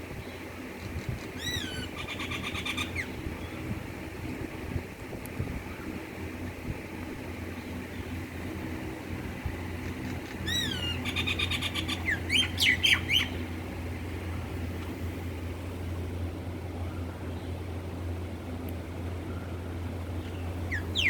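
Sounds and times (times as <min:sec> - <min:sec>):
steady low hum: 0:00.0 - 0:21.0
myna calling: 0:10.2 - 0:13.4.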